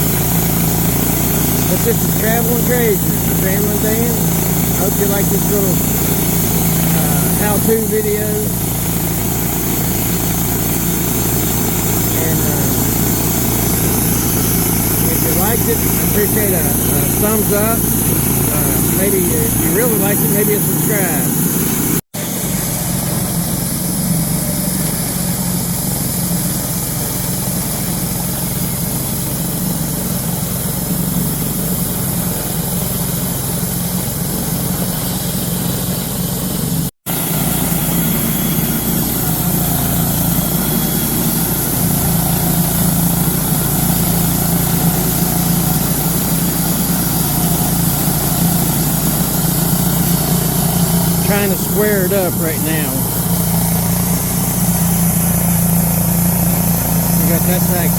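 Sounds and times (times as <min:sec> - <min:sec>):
band blade sawing a log: 0:00.0 - 0:22.0
portable sawmill running: 0:00.0 - 0:57.9.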